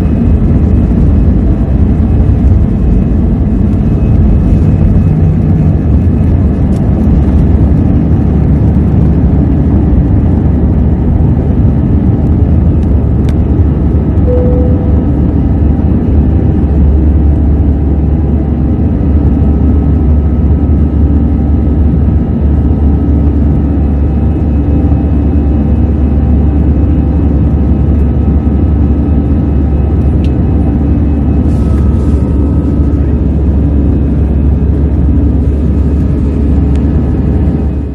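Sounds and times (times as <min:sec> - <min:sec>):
jet engine cabin rumble: 0:00.0 - 0:37.9
faint steady tones: 0:14.2 - 0:15.5.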